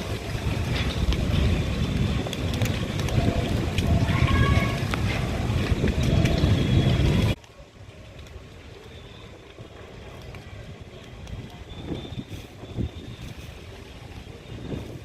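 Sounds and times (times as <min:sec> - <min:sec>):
wind blowing low rumble: 0:00.0 - 0:08.7
steady breeze: 0:00.0 - 0:15.0.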